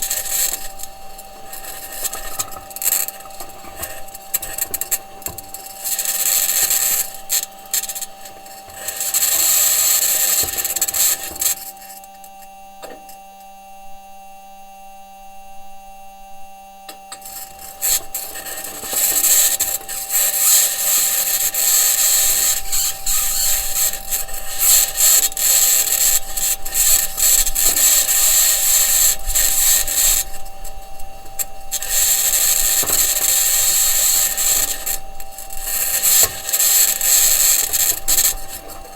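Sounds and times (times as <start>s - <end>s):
rover wheels over ground: 0.0s - 12.0s, 17.1s - 38.9s
loud high-pitched scratching: 0.0s - 12.1s, 17.2s - 38.9s
faint steady hum: 0.0s - 38.9s.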